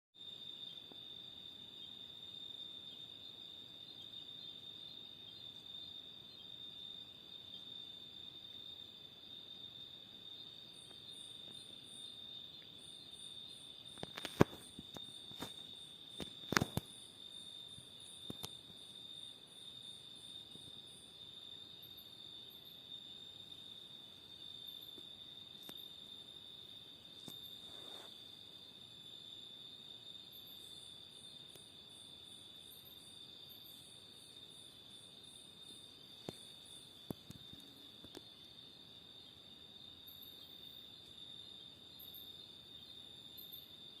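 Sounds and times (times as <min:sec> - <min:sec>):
insect high chirps: 0:00.2 - 0:44.0.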